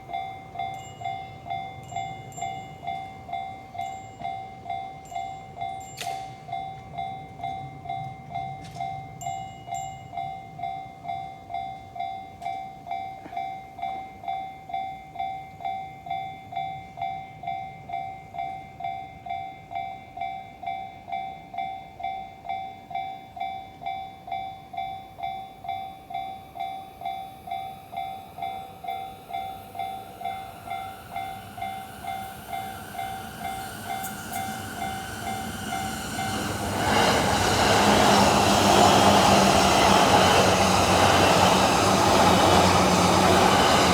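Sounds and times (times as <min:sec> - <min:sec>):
level crossing warning bell: 0:00.0 - 0:43.9
train rolling: 0:27.5 - 0:43.9.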